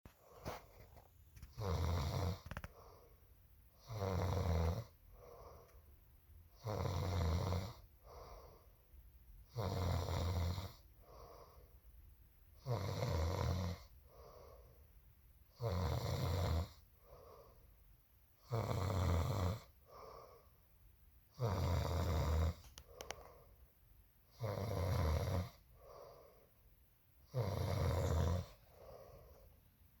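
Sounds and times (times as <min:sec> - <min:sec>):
woman snoring: 0:01.4 - 0:02.7, 0:03.8 - 0:05.0, 0:06.6 - 0:08.6, 0:09.5 - 0:11.6, 0:12.6 - 0:14.6, 0:15.5 - 0:17.4, 0:18.4 - 0:20.4, 0:21.3 - 0:23.2, 0:24.3 - 0:26.1, 0:27.2 - 0:29.4.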